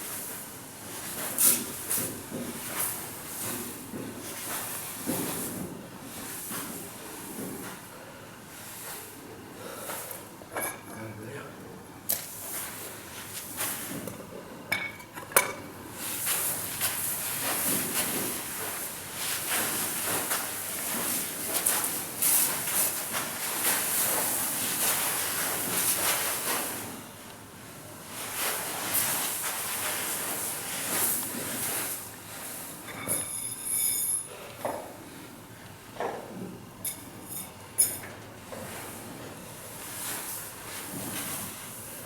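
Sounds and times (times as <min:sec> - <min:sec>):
metallic ringing squeal: 0:33.2 - 0:34.2.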